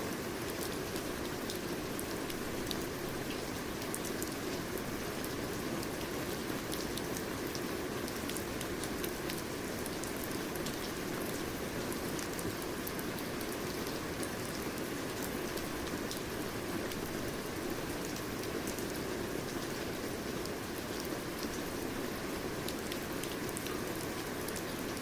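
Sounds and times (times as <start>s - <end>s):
steady rain hiss: 0.0s - 25.0s
raindrops ticking on a surface: 0.1s - 25.0s.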